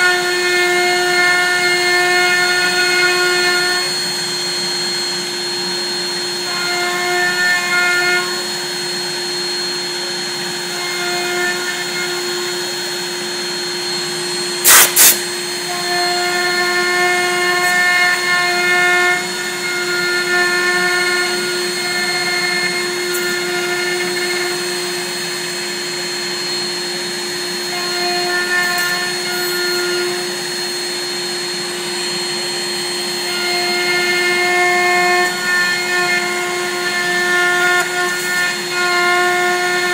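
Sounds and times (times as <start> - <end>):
cnc router spindle whine: 0.0 - 39.9
cutter milling wood: 0.0 - 39.9.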